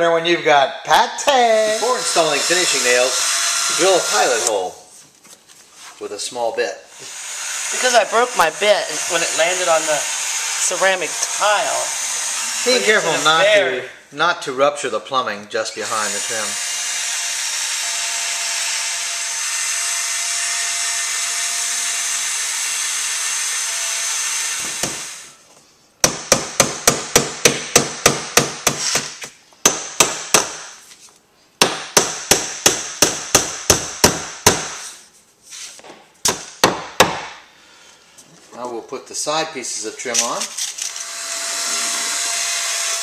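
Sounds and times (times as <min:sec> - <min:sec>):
electric drill boring wood: 0:01.6 - 0:04.6, 0:06.9 - 0:13.5, 0:15.8 - 0:25.4, 0:40.7 - 0:43.0.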